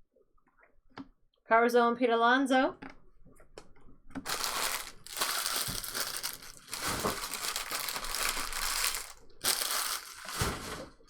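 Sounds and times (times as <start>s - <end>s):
card pack wrapper crinkling: 4.2s - 11.0s.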